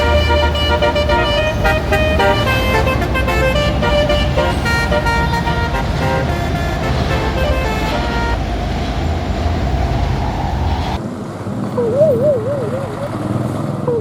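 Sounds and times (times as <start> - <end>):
multi-tone bus horns melody: 0.0 - 9.4
engines and traffic rumble: 0.0 - 14.0.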